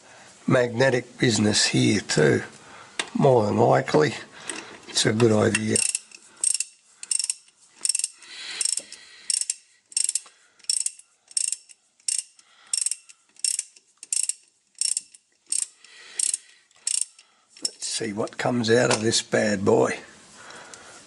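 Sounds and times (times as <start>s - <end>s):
socket ratchet clicking: 5.5s - 17.8s.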